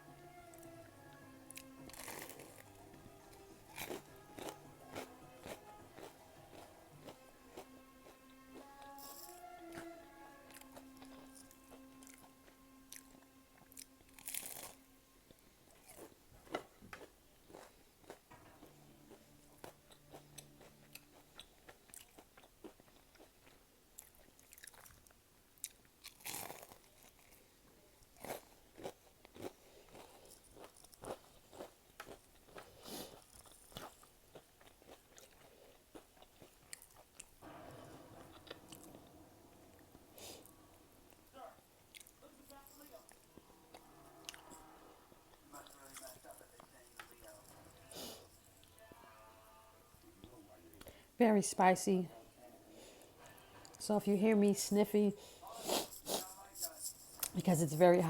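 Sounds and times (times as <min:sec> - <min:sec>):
crunchy biting and chewing: 0:01.5 - 0:08.8, 0:12.9 - 0:27.4, 0:28.1 - 0:41.2, 0:42.9 - 0:48.7.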